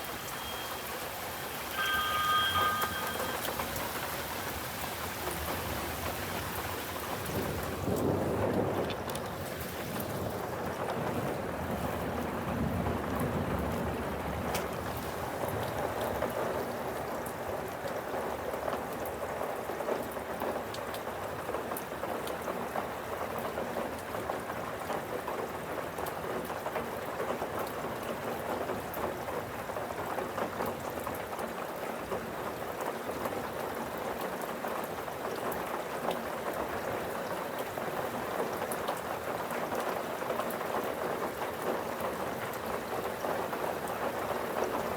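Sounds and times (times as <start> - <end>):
rain drops pattering: 0.0 - 44.9
steady rain falling: 0.0 - 44.9
thunder rumbling: 1.7 - 16.0.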